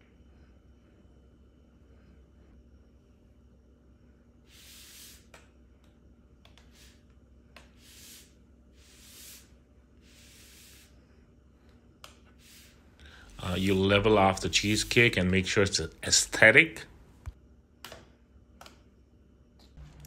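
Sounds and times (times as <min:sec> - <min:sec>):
spatula swishing strokes: 0:04.5 - 0:05.4, 0:06.6 - 0:11.2, 0:12.3 - 0:12.9.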